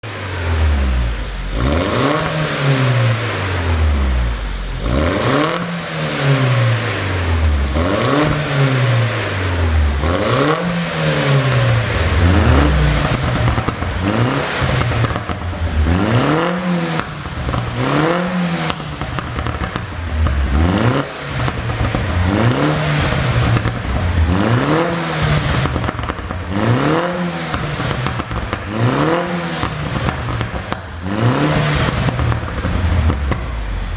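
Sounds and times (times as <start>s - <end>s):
car engine revving: 0.0s - 33.9s
exhaust crackling and popping: 0.0s - 33.9s.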